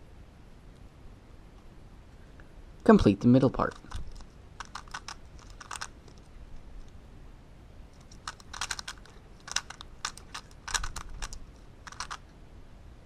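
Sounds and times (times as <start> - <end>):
plastic puzzle cube clicking: 3.7 - 6.3, 8.0 - 12.2.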